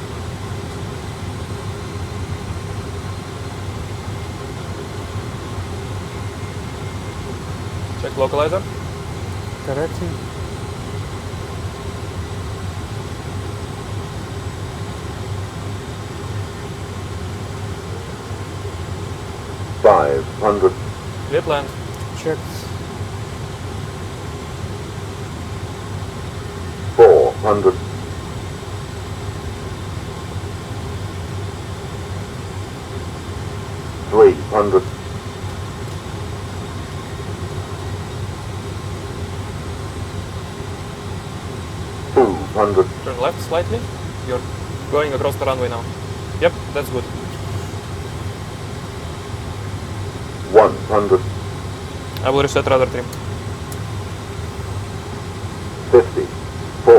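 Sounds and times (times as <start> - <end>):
faint steady hums: 0.0 - 56.9
simulated engine and airflow rumble: 0.0 - 56.9
low hum: 17.2 - 22.9, 41.6 - 48.6, 49.8 - 53.3.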